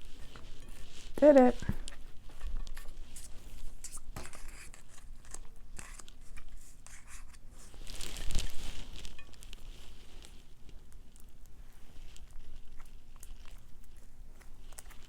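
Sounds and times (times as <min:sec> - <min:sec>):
wrapper crinkling: 0:00.0 - 0:10.5.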